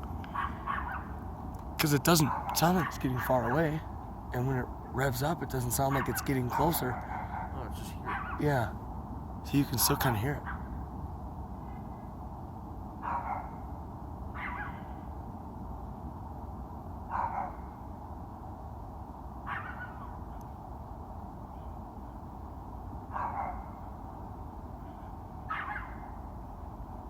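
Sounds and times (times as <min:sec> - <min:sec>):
faint jet drone: 0:00.0 - 0:27.0
dog barking: 0:00.3 - 0:01.1, 0:02.2 - 0:03.6, 0:05.9 - 0:08.4, 0:13.0 - 0:13.6, 0:14.4 - 0:14.8, 0:17.1 - 0:17.6, 0:19.5 - 0:20.1, 0:23.1 - 0:23.8, 0:25.5 - 0:26.1.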